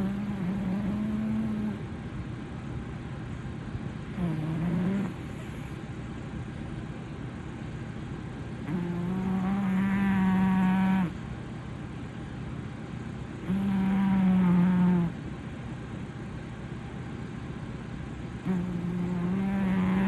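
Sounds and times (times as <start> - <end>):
cat snoring loudly: 0.0 - 1.8, 4.2 - 5.7, 8.7 - 11.2, 13.4 - 15.2, 18.4 - 20.0.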